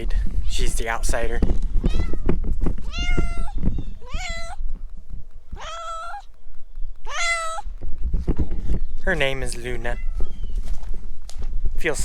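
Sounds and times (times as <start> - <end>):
cat meowing: 1.8 - 4.6, 5.5 - 6.3, 7.0 - 7.7.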